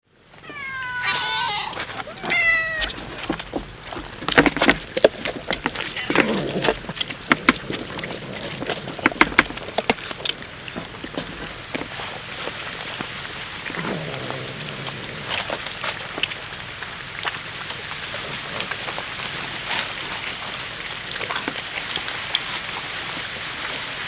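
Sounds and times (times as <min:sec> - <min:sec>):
cat meowing: 0:00.4 - 0:03.3, 0:05.8 - 0:06.7
cat chewing food: 0:00.4 - 0:23.9.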